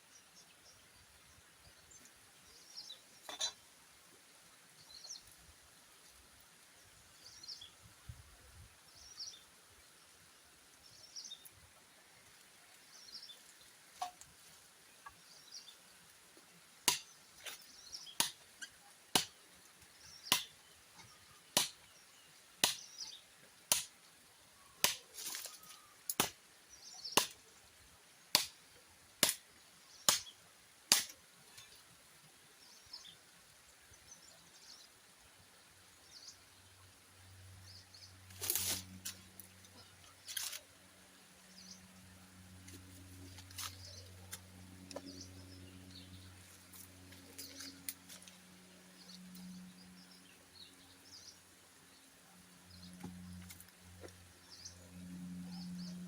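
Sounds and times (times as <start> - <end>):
birds chirping: 14.9 - 23.4, 36.0 - 56.0
blade chopping bamboo: 16.8 - 18.4, 19.1 - 19.4, 20.2 - 20.6, 21.5 - 21.9, 22.6 - 22.9, 23.7 - 24.0, 24.8 - 26.4, 27.1 - 27.4, 28.3 - 28.6, 29.2 - 29.5, 30.1 - 30.3, 30.9 - 31.2.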